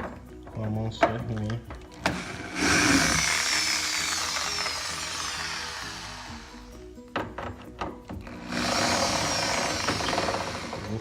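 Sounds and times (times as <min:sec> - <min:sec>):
background music: 0:00.0 - 0:11.0
power screwdriver whining: 0:02.0 - 0:06.9, 0:08.2 - 0:11.0.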